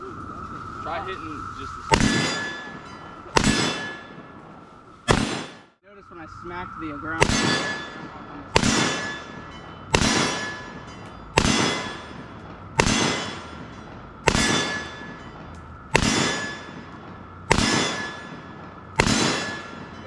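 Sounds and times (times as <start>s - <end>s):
ringing clang of steel target: 1.6s - 5.6s, 6.8s - 20.0s
gunshots: 1.9s - 4.3s, 5.0s - 5.8s, 7.2s - 10.8s, 11.4s - 15.2s, 15.9s - 20.0s.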